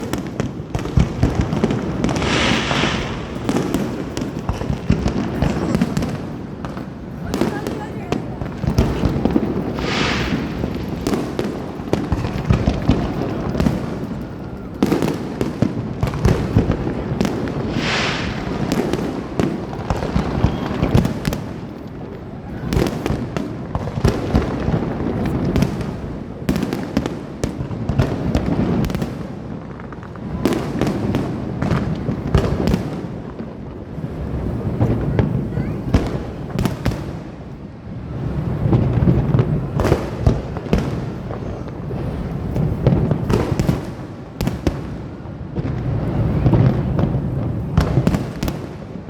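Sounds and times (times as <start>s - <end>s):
hissing firework shell: 0.0s - 7.8s, 8.6s - 14.3s, 16.4s - 21.7s
fireworks bangs and crackling: 0.0s - 49.0s.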